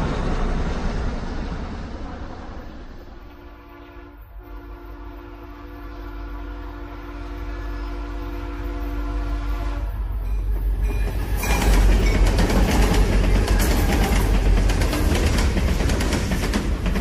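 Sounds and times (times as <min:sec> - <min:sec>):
deep steady rumble: 0:00.0 - 0:03.4.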